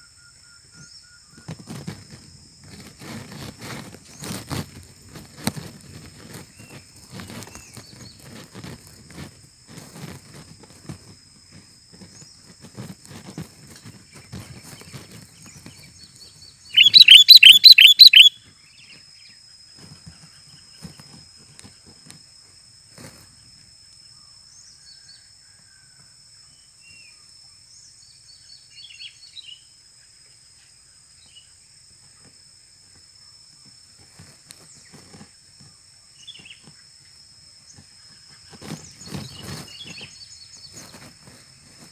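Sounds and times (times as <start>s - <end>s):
faint bird chirps: 14.2s - 21.1s
bird chattering: 16.8s - 18.4s
high-pitched whine: 16.8s - 19.0s.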